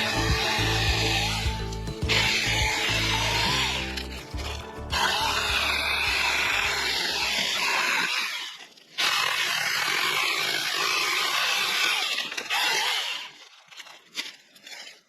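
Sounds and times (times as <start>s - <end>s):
chainsaw cutting wood: 0.0s - 14.9s.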